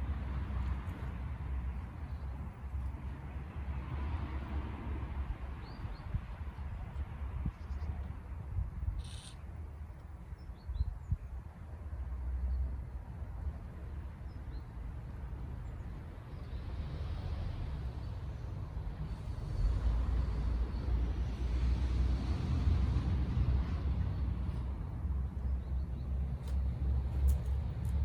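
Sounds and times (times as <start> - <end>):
road vehicle passing: 0.0 - 5.7, 15.2 - 28.0.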